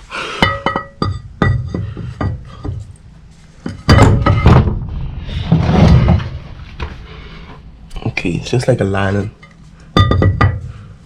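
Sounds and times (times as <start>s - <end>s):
scraping clatter: 3.6s - 7.6s.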